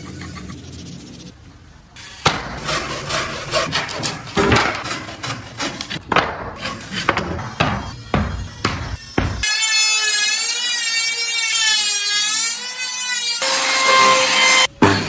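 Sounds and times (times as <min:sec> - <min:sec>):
hand tools scraping wood: 0:02.2 - 0:07.9.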